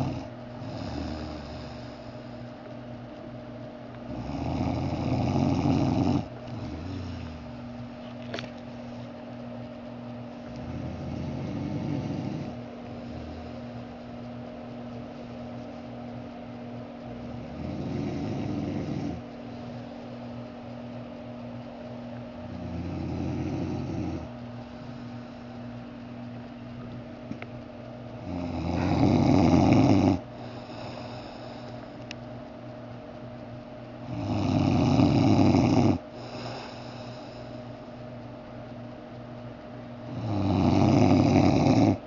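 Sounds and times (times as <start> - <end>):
man snoring: 0.0 - 2.2, 4.1 - 7.6, 10.5 - 13.8, 17.2 - 19.2, 22.5 - 24.3, 28.2 - 31.8, 34.0 - 37.5, 40.1 - 42.0.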